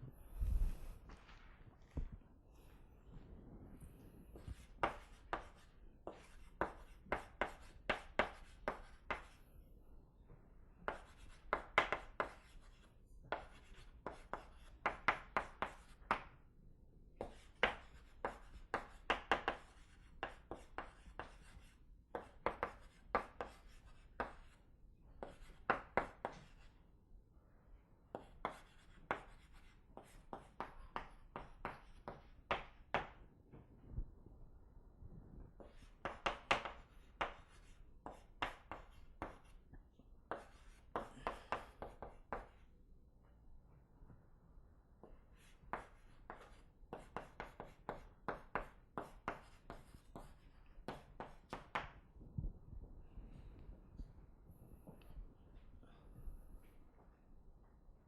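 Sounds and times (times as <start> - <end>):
pen writing strokes: 4.3 - 9.4, 10.8 - 16.3, 17.2 - 24.6, 25.2 - 26.8, 28.2 - 33.2, 35.6 - 39.7, 40.3 - 42.7, 45.0 - 51.8.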